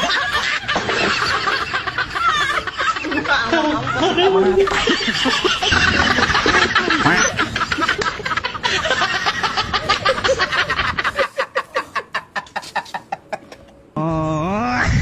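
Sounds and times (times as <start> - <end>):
person laughing: 0.0 - 13.8.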